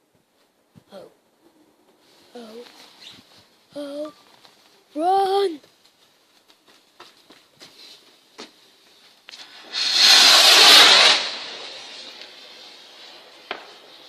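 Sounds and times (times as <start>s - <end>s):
firework rocket launching hiss: 9.3s - 14.0s.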